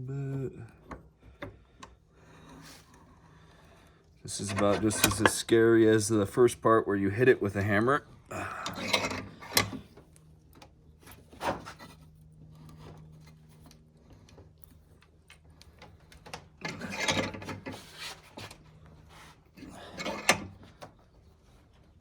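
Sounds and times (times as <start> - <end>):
vise rubbing and rasping: 4.3 - 5.4.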